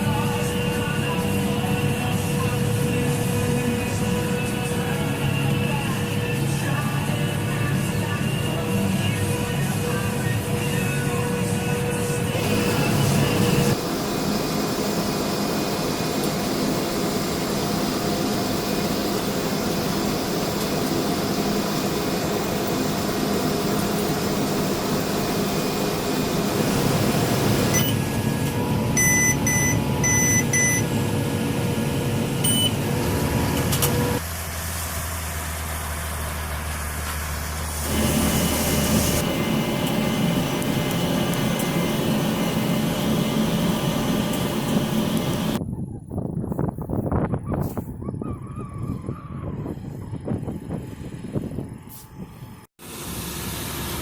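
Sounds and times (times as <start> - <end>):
tractor and baler droning: 0.0 - 45.6, 47.6 - 54.0
high electronic beeps: 27.7 - 28.2, 29.0 - 30.9, 32.4 - 32.8.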